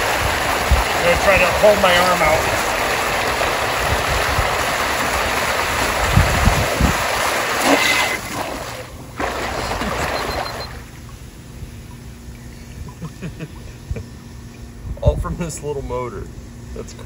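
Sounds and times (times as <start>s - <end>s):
wind noise on microphone: 0.0s - 1.5s, 2.4s - 7.6s, 14.8s - 15.5s
rushing splashing water: 0.0s - 10.9s.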